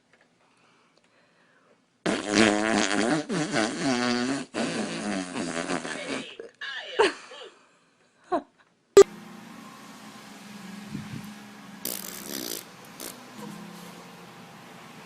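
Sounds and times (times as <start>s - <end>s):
buzzy fart: 2.0s - 6.3s, 11.8s - 13.2s.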